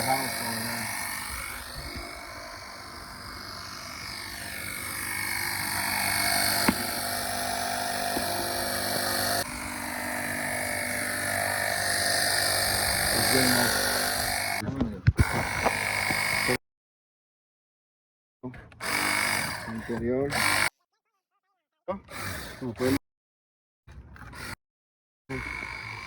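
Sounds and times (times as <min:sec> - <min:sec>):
machinery hum and whine: 0:00.0 - 0:14.6.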